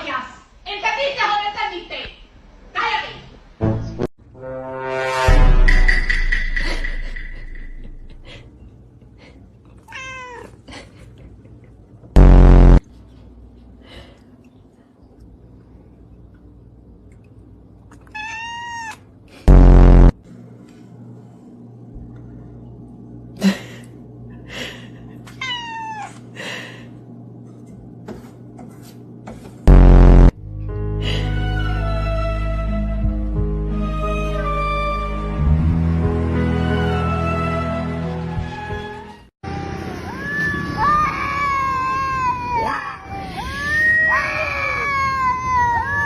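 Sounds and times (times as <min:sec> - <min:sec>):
cat meowing: 0:09.9 - 0:10.6, 0:18.1 - 0:19.0, 0:25.4 - 0:26.1
loud low buzzing blast: 0:12.2 - 0:12.8, 0:19.5 - 0:20.2, 0:29.7 - 0:30.4
loud steady-pitched burst: 0:12.2 - 0:12.8, 0:19.5 - 0:20.2, 0:29.7 - 0:30.4.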